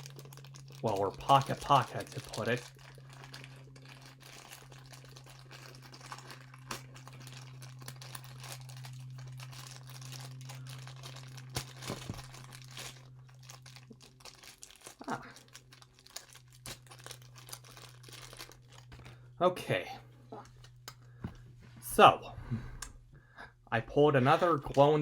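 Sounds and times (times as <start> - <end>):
plastic snapping and tearing: 0.0 - 19.2
plastic packaging crinkling: 0.0 - 19.4
low electrical hum: 0.0 - 25.0.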